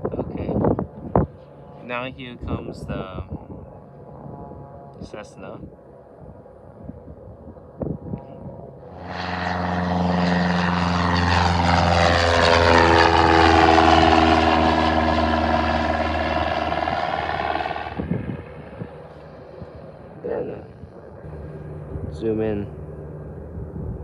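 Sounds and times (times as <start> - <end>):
propeller plane passing: 0.0 - 24.0.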